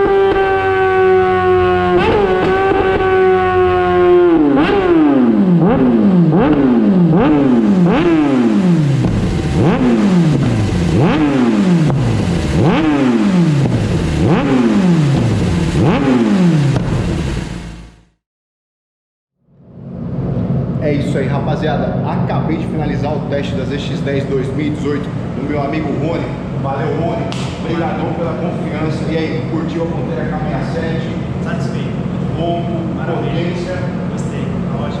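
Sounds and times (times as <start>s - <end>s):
motorcycle engine revving: 0.0s - 18.2s.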